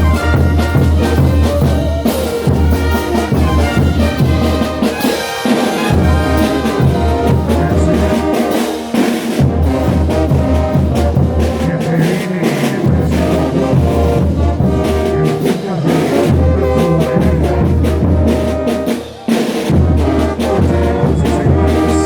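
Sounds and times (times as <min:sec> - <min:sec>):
low brass bass line: 0:00.0 - 0:18.9, 0:19.7 - 0:22.0
drums keeping a beat: 0:00.0 - 0:22.0
trumpets and trombones: 0:00.0 - 0:22.0.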